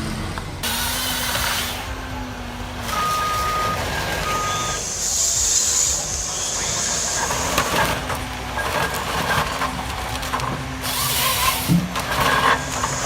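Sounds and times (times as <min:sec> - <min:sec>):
heavy machinery knocks and clatter: 0:07.4 - 0:13.0.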